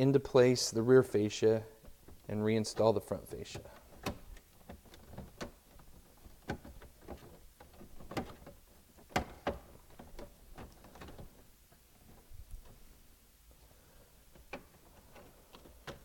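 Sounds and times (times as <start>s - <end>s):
plastic panels clicking into place: 1.8s - 11.4s.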